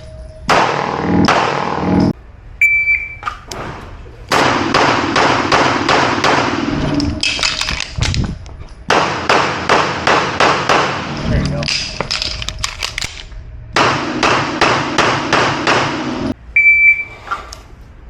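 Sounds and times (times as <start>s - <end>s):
shot timer beep: 2.6s - 3.3s, 16.6s - 17.2s.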